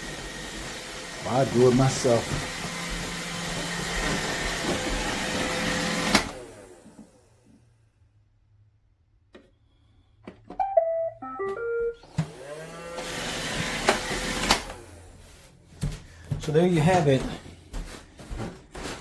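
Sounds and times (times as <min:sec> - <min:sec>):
vacuum motor whine: 0:00.0 - 0:07.3, 0:12.0 - 0:15.1
robot vacuum electronic tune: 0:10.6 - 0:12.2.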